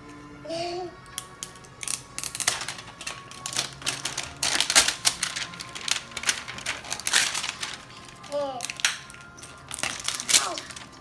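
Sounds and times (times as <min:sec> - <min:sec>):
wrapping crinkling and ripping: 0:01.2 - 0:11.0.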